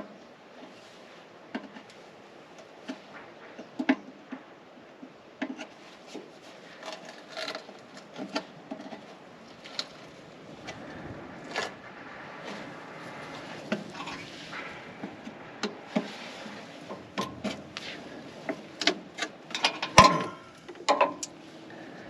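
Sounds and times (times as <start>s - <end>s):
metal lid knocks and clanks: 19.6s - 21.2s.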